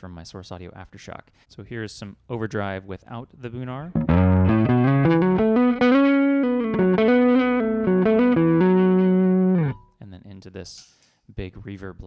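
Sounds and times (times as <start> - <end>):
electric bass melodic run: 3.9 - 9.9.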